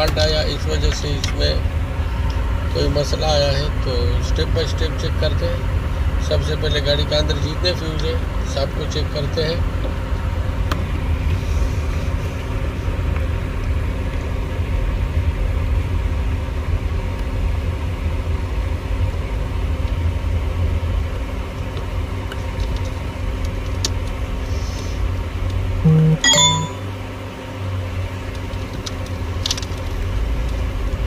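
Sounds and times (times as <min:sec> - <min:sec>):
constant hum: 0:00.0 - 0:31.0
short loud tone: 0:25.8 - 0:27.0.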